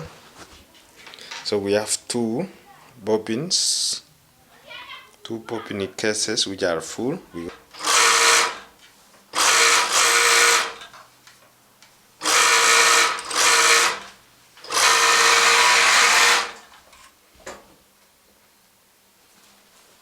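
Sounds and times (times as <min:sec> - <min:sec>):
sewing machine motor whir: 0:07.7 - 0:08.7, 0:09.4 - 0:10.8, 0:12.2 - 0:16.7.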